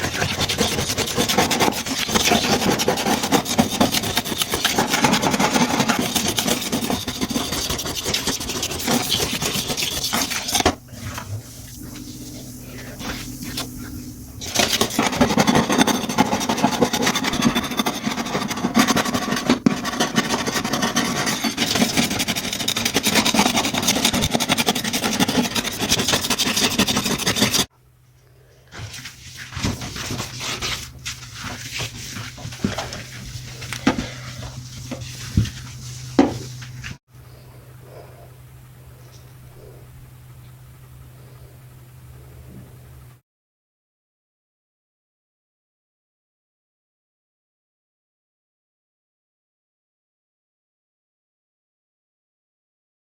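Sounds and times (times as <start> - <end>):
scrubbing a surface: 0.0 - 27.7, 28.7 - 37.0
low hum: 6.8 - 18.5.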